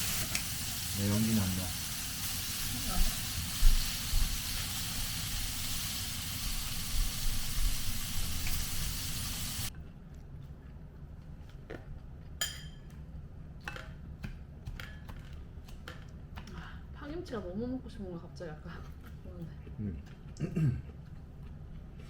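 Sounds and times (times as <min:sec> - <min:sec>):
food sizzling in a frying pan: 0:00.0 - 0:09.7.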